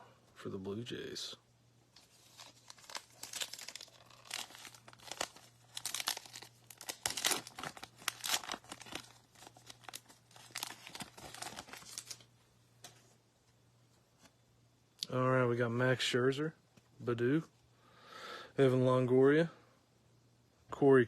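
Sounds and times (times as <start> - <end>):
cards being handled: 2.0 - 12.2
foil wrapper tearing and crinkling: 2.0 - 12.3.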